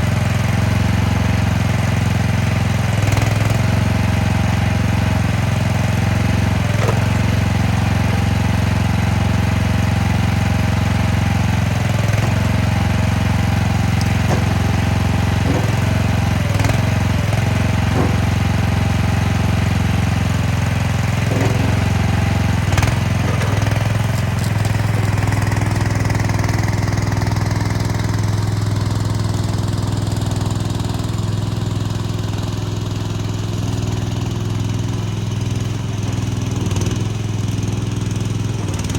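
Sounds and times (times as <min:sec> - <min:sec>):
loader engine running: 0:00.0 - 0:38.9
metal clanks and knocks: 0:11.8 - 0:26.6.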